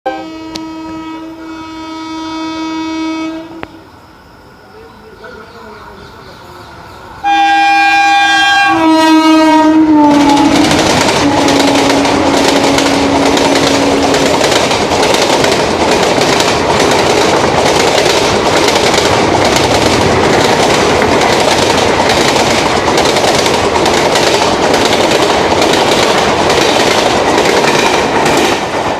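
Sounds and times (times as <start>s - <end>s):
locomotive horn: 0.1s - 3.8s, 7.2s - 14.3s
train wheels clattering: 10.0s - 28.9s.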